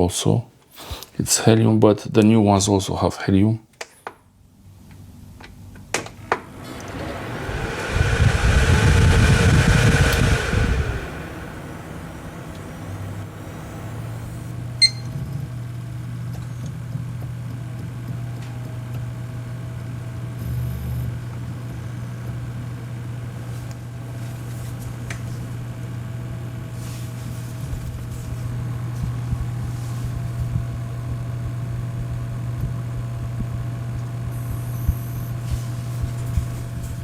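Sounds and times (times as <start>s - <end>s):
computer hum: 6.2s - 18.2s, 18.9s - 36.9s
hard drive high tone: 6.3s - 16.7s, 28.4s - 37.0s.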